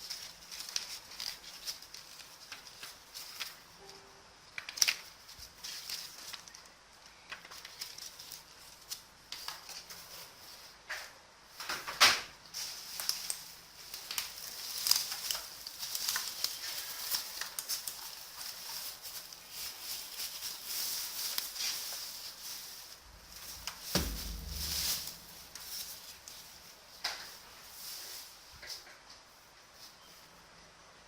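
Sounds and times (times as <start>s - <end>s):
dull thump: 23.1s - 25.8s.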